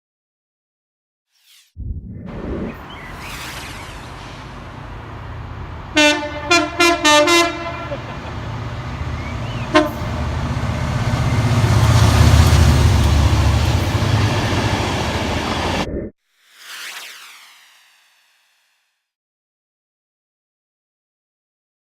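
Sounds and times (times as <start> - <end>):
train passing rumble: 2.3 - 16.0
train horn blasts: 6.0 - 8.3, 9.2 - 10.3.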